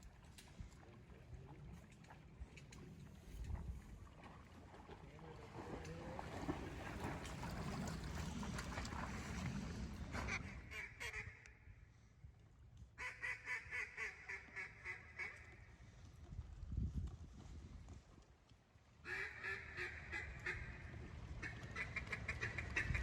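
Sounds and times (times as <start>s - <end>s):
duck quacking: 21.4s - 23.0s.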